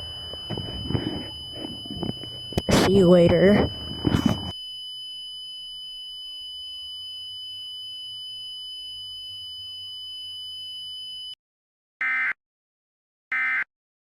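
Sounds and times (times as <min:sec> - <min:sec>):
high-pitched electronic alert tone: 0:01.7 - 0:04.4.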